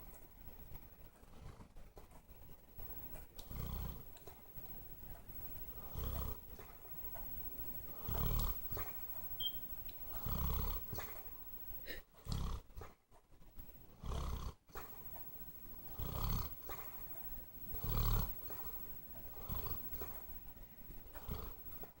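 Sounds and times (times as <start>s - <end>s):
dog snoring: 0.5s - 22.0s.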